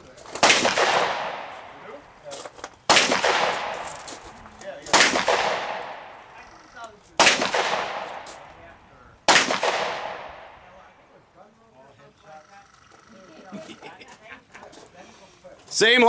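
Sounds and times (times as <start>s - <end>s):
pistol shots echoing: 0.2s - 11.3s.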